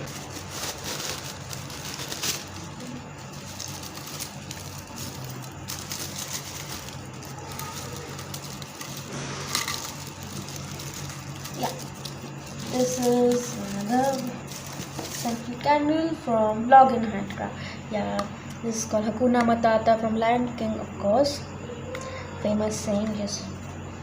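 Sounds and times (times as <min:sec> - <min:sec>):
wrapping crinkling and rustling: 0:00.0 - 0:15.7
steady low hum: 0:00.0 - 0:24.0.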